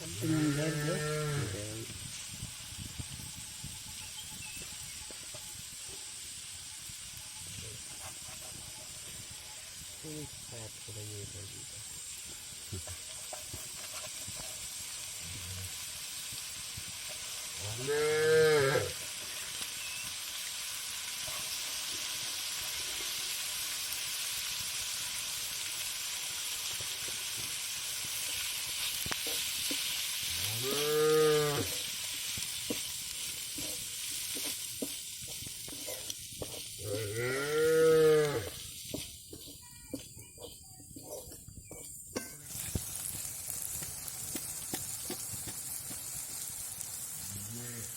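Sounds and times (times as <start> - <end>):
frying sizzle: 0.0 - 47.9
cow mooing: 0.1 - 1.6, 17.7 - 18.9, 30.4 - 31.8, 36.8 - 38.6, 47.3 - 47.9.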